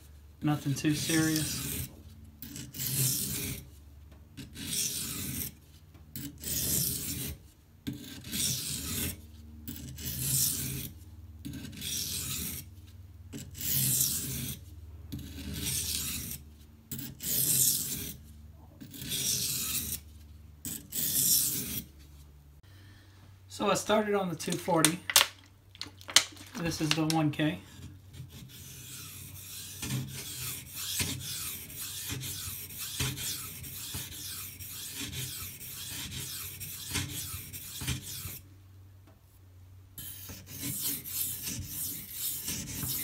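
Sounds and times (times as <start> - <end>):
knife scraping on whetstone: 0.9 - 3.7, 4.4 - 5.6, 6.2 - 12.7, 13.4 - 14.6, 15.2 - 18.2, 18.8 - 20.0, 20.7 - 21.9, 25.8 - 38.4, 40.0 - 43.0.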